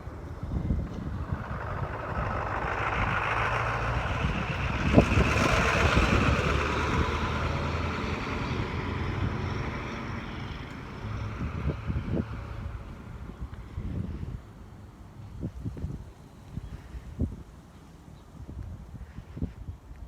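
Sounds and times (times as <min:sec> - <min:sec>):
vehicle engine passing: 0:00.0 - 0:14.2.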